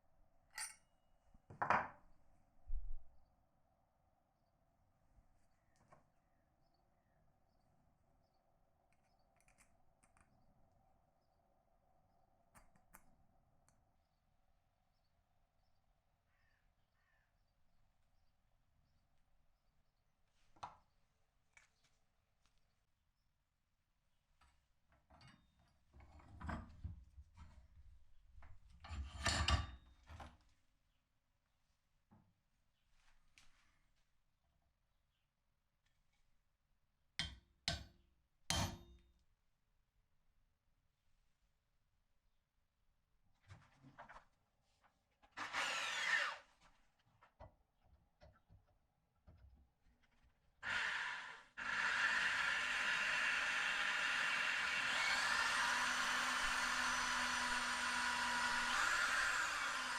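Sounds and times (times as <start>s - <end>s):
power tool running: 45.4s - 46.4s, 50.6s - 59.9s
hand file scraping steel: 45.4s - 46.5s.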